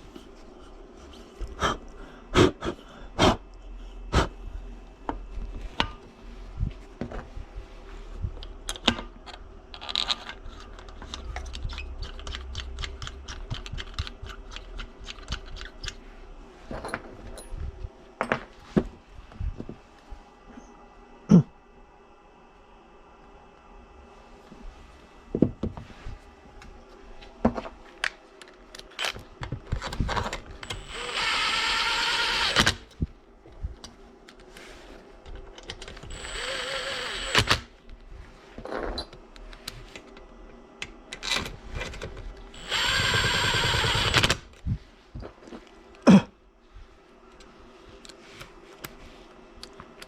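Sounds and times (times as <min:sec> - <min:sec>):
power drill running: 0:30.6 - 0:32.9, 0:36.0 - 0:37.7, 0:42.6 - 0:44.4.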